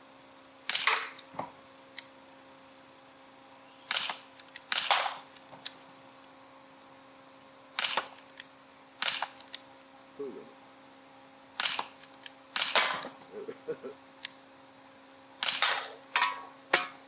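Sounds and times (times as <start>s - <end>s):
air pistol shots: 0.7s - 1.2s, 3.9s - 5.3s, 7.8s - 8.2s, 9.0s - 9.4s, 11.6s - 12.0s, 12.6s - 13.2s, 15.4s - 16.0s.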